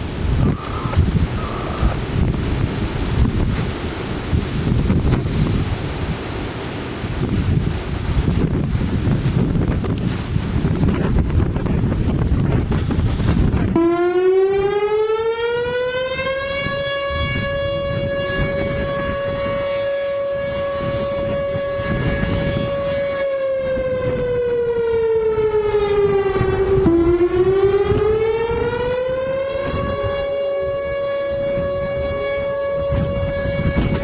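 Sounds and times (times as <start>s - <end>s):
electronic warning siren: 0.0s - 5.8s, 12.8s - 34.0s
wind buffeting microphone: 0.0s - 34.0s.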